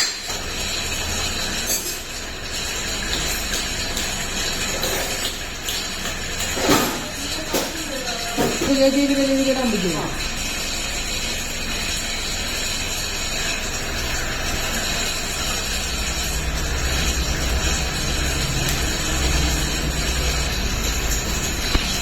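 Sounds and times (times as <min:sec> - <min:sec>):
truck diesel engine drone: 0:10.1 - 0:22.0.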